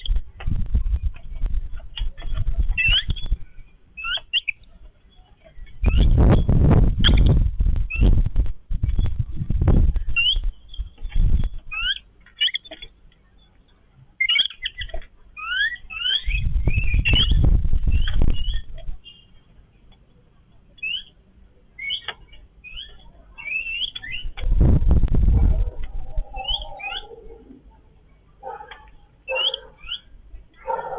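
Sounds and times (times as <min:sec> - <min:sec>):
loud low rustling bursts: 0:05.8 - 0:11.7, 0:16.3 - 0:19.0, 0:24.2 - 0:27.8
babblers chirping: 0:25.1 - 0:30.9.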